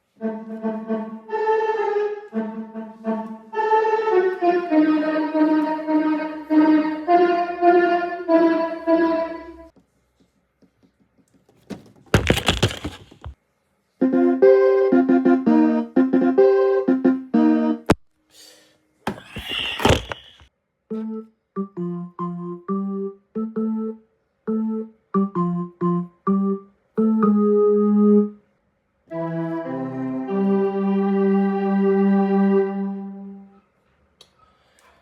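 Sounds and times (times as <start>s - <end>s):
electronic ringtone melody: 20.9s - 28.3s.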